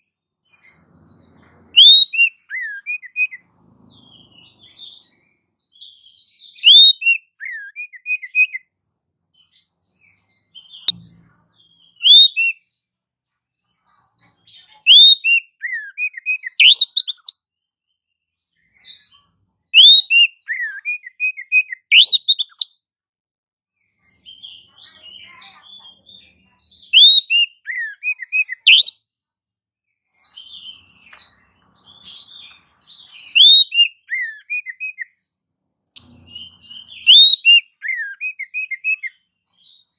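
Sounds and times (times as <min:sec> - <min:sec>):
faint bird chatter: 0:00.0 - 0:22.9, 0:23.7 - 0:39.9
high bird chirps and whistles: 0:00.4 - 0:08.6, 0:09.4 - 0:12.9, 0:13.6 - 0:17.4, 0:18.6 - 0:22.9, 0:23.8 - 0:29.2, 0:30.1 - 0:39.9.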